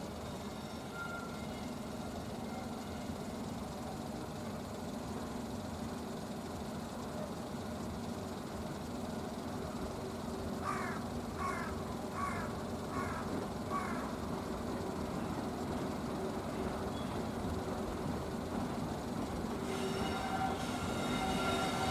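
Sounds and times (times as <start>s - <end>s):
crow cawing: 10.6s - 14.2s.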